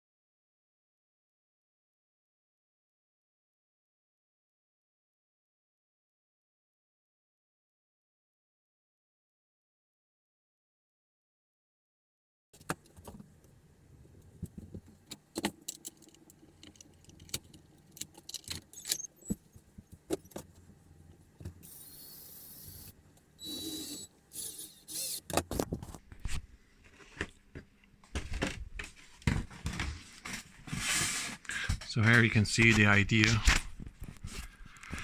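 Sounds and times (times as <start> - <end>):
small hard parts clicking: 12.6 - 26.0
small electric motor whirring: 18.4 - 20.4, 21.4 - 25.7.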